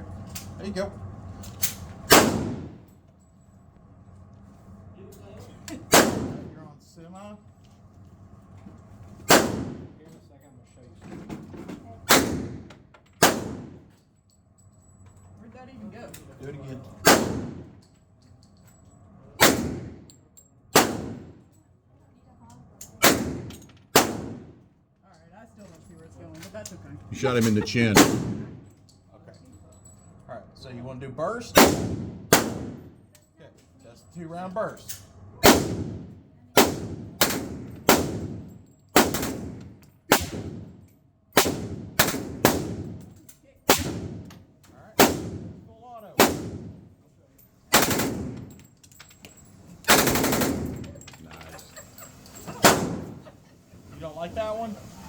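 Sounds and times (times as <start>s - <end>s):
submachine gun single shots: 2.1s - 2.8s, 5.9s - 6.5s, 9.3s - 9.9s, 12.1s - 13.8s, 17.0s - 17.7s, 19.4s - 20.0s, 20.8s - 21.4s, 23.0s - 24.6s, 28.0s - 28.6s, 31.6s - 32.9s, 35.4s - 40.7s, 41.4s - 43.0s, 43.7s - 44.3s, 45.0s - 45.6s, 46.2s - 46.8s, 47.7s - 48.5s, 49.9s - 50.8s, 52.6s - 53.2s
submachine gun bursts: 47.7s - 48.6s, 49.8s - 51.1s.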